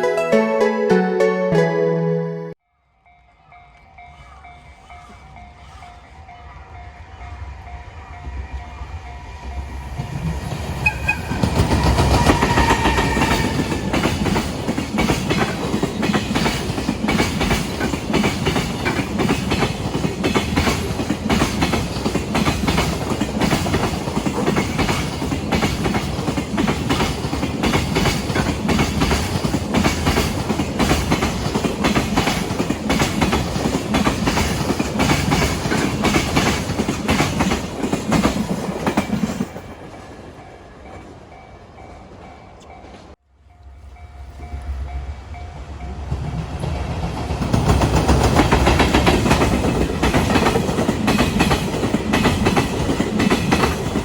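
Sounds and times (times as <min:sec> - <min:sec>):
train wheels clickety-clack: 0:09.4 - 0:43.2, 0:46.0 - 0:54.0
train horn: 0:10.8 - 0:14.3.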